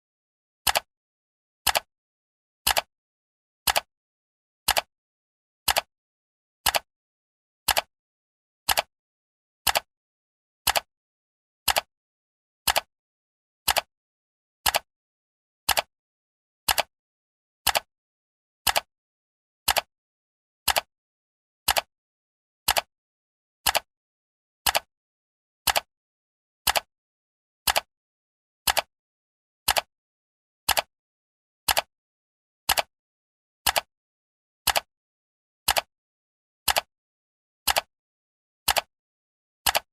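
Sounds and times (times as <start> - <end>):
timer ticking: 2.7 - 2.9, 4.7 - 4.9, 5.7 - 5.9, 6.7 - 6.9, 7.7 - 7.9, 8.7 - 8.9, 11.7 - 11.9, 12.7 - 12.9, 13.7 - 13.9, 19.7 - 19.9, 20.7 - 20.9, 21.7 - 21.9, 22.7 - 22.9, 26.7 - 26.9, 27.7 - 27.9, 28.7 - 28.9, 29.7 - 29.9, 31.7 - 31.9, 33.7 - 33.9, 34.7 - 34.9, 35.7 - 35.9, 36.7 - 36.9, 37.7 - 37.9, 38.7 - 38.9, 39.7 - 39.9.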